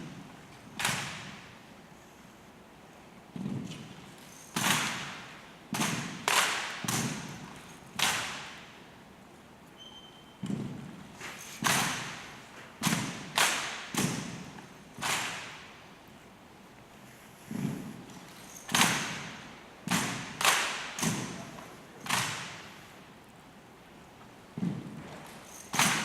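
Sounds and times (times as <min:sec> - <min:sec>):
rifles slapping and thudding: 0:00.4 - 0:01.6, 0:03.3 - 0:08.8, 0:10.4 - 0:15.8, 0:17.5 - 0:22.8, 0:24.5 - 0:26.0.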